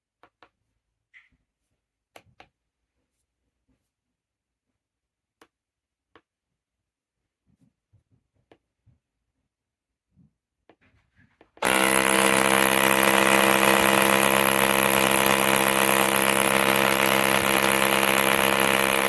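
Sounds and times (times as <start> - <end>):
machine running steadily: 11.6 - 19.0.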